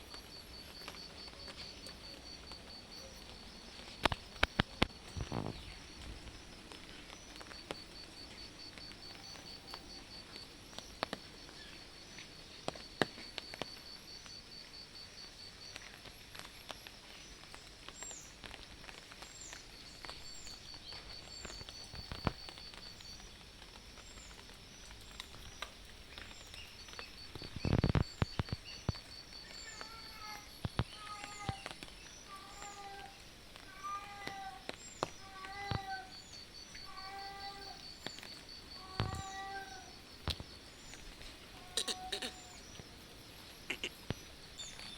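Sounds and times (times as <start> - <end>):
rain dripping taps: 0.0 - 44.9
insect trilling: 0.1 - 13.9, 25.1 - 44.9
cat mewing: 33.7 - 34.6, 41.6 - 42.6, 43.7 - 44.0.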